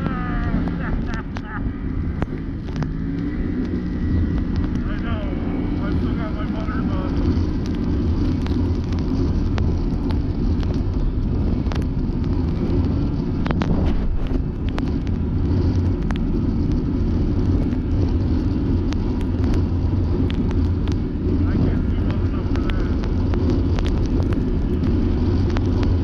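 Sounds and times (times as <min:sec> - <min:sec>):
vehicle engine running: 0:00.0 - 0:26.0
sharp clicks and knocks: 0:00.6 - 0:05.1.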